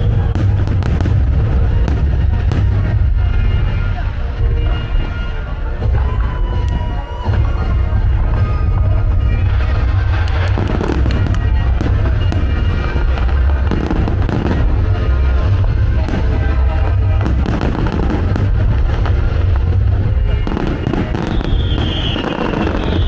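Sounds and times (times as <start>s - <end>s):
fireworks booming: 0.0s - 23.0s
music soundtrack: 0.0s - 23.0s
crackling firework shells: 9.4s - 23.0s.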